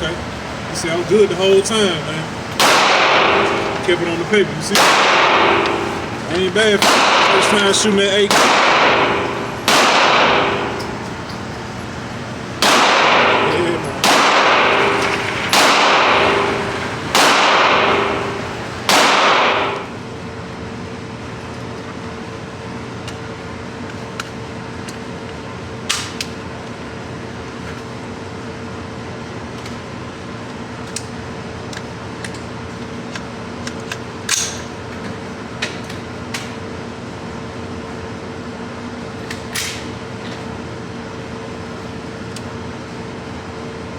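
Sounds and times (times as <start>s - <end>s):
steady hum: 0.0s - 43.9s
gunshots with echo: 2.5s - 19.9s
distant gunshot cracks: 2.6s - 4.0s, 4.7s - 6.2s, 6.8s - 7.7s, 8.3s - 11.2s, 12.6s - 19.9s.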